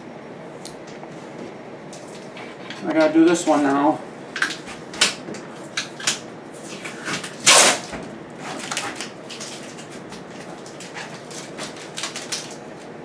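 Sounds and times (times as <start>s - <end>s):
plastic film crackling: 4.3s - 13.0s
plastic film rasp: 5.7s - 12.7s.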